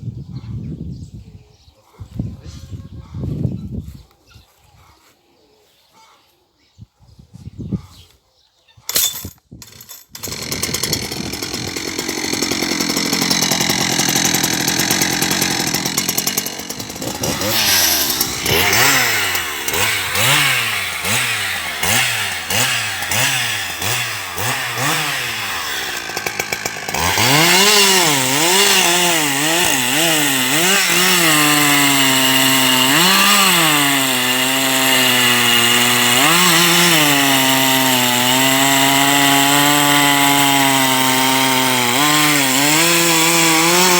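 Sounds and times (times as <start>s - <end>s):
chainsaw revving: 10.1s - 43.9s.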